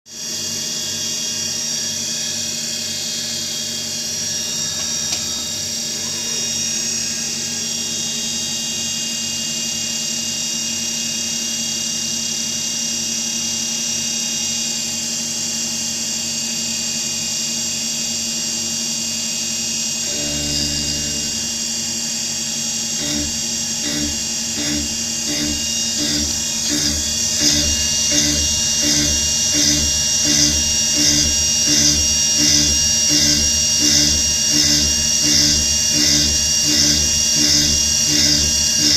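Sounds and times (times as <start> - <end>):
milling machine cutting metal: 20.0 - 22.1, 22.7 - 38.9.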